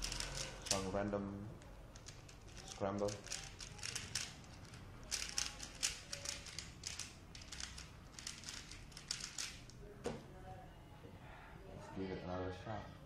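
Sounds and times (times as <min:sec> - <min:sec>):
puzzle cube plastic clicking: 0:01.6 - 0:09.8.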